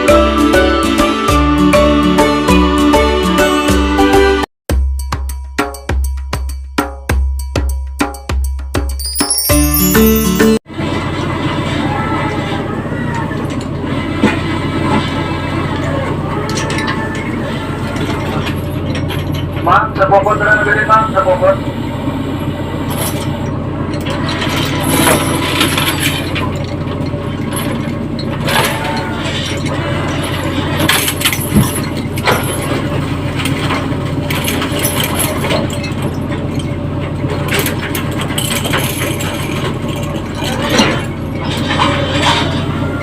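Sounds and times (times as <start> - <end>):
boat engine droning: 10.7 - 43.0
knocks and clanks: 13.2 - 20.2, 22.9 - 43.0.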